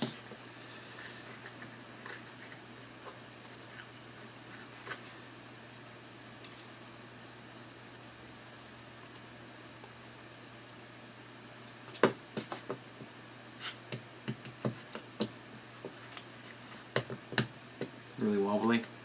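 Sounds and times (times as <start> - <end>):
quiet hum: 0.0 - 19.0.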